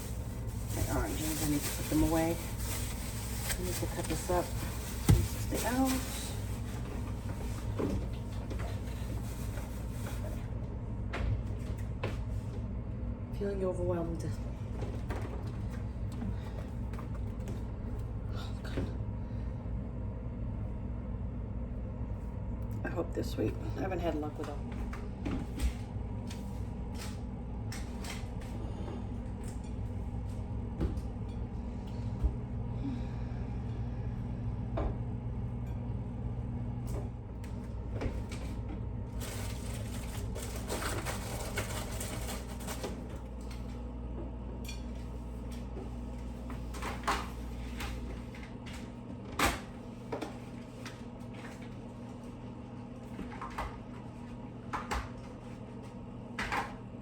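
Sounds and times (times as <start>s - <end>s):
steady appliance hum: 0.0s - 57.0s.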